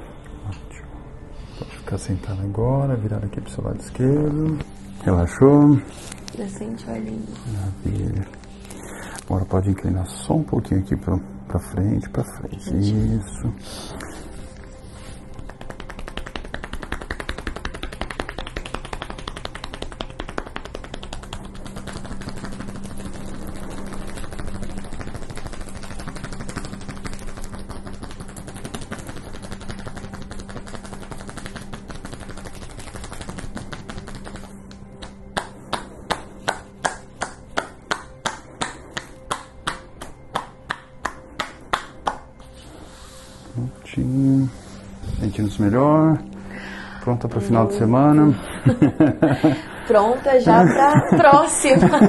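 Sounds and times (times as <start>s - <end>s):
massage gun tapping on body: 15.3s - 42.5s.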